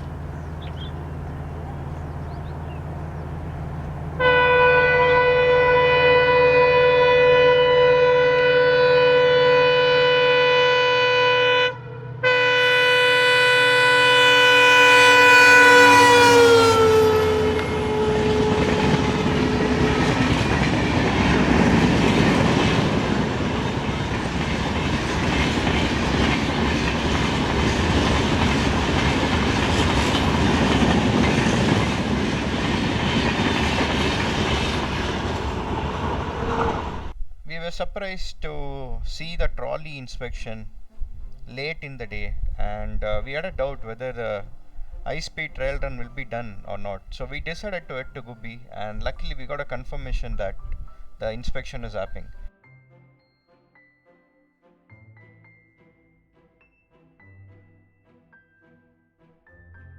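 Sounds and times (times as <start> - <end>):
train horn blast: 0.0 - 37.2, 40.7 - 47.1
train wheels clattering on rails: 17.4 - 37.0.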